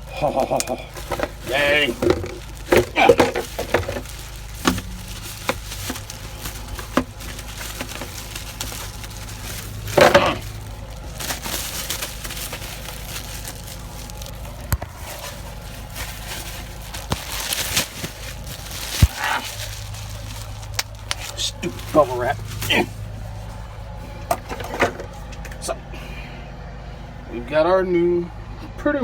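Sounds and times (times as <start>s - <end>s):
bubble wrap popping: 0.3s - 23.3s
plastic packaging crinkling: 0.3s - 25.2s
loud plastic rustling: 0.3s - 25.4s.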